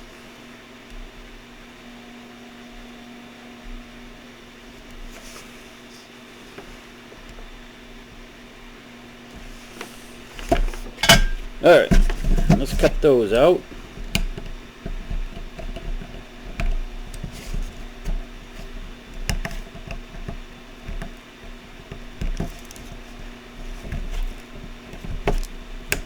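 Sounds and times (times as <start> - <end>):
low steady hum: 7.1 - 26.0.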